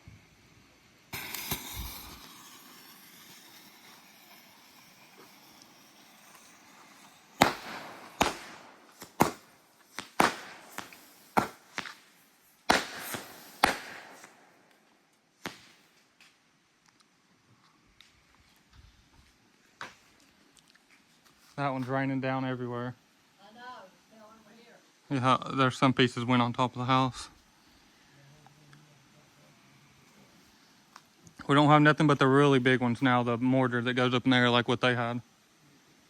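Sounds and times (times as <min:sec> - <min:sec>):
firework hissing rush: 0:00.0 - 0:16.2
firework bangs: 0:00.9 - 0:16.1.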